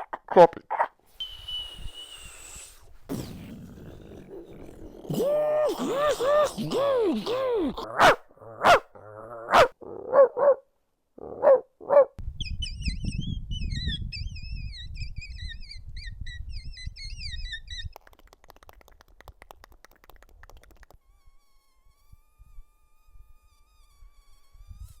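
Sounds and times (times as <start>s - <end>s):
dog barks: 7.9s - 8.9s, 9.5s - 12.2s
rapid bird-like chirping: 12.4s - 17.9s.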